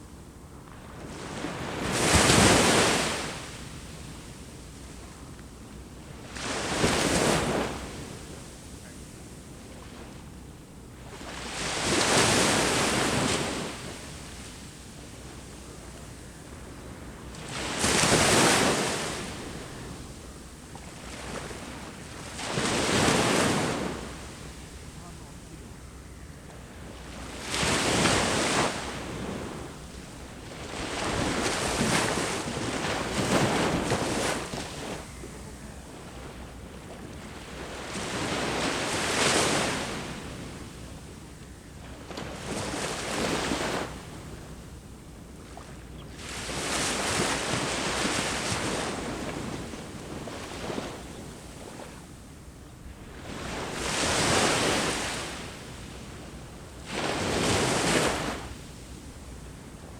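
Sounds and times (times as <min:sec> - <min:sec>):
sea waves breaking on beach: 0:16.5 - 0:25.8, 0:27.0 - 0:41.2, 0:45.5 - 0:52.1, 0:52.9 - 0:59.2.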